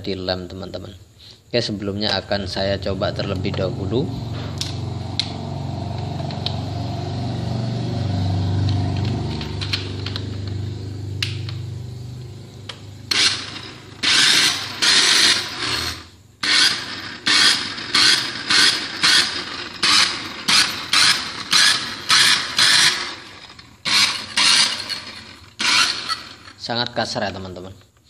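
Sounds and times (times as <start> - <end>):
hand mixer motor hum: 13.1 - 26.6
hand mixer harsh rattling: 13.1 - 26.7.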